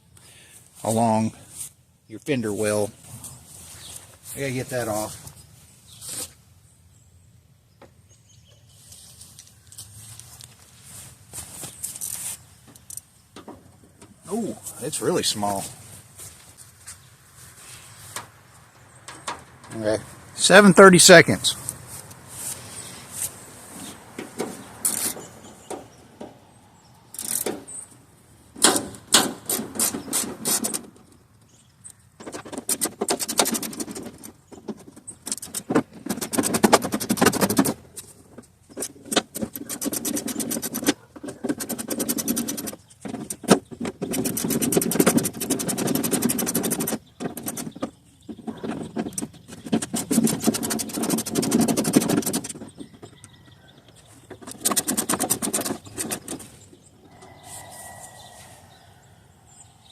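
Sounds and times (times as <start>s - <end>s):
ratchet wrench clicking: 27.1s - 27.5s.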